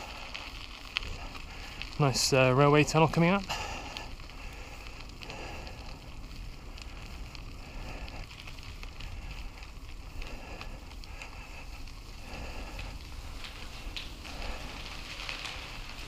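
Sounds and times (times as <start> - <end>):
bike tyre rumble on trail: 0.0 - 16.0
bike clicks and rattles: 3.5 - 16.0.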